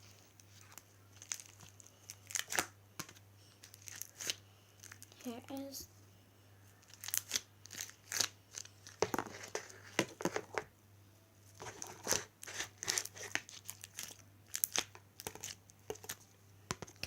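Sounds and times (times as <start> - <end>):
sticky slime crackling and popping: 0.6 - 2.8, 3.6 - 5.3, 6.8 - 9.0, 11.8 - 16.2.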